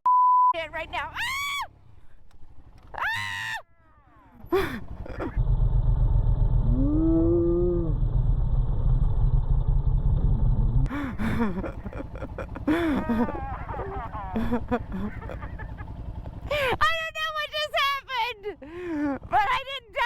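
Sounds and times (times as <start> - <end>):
motorcycle engine rumbling: 0.6 - 20.0
person crying out: 12.6 - 15.2
person yelling: 12.9 - 14.4.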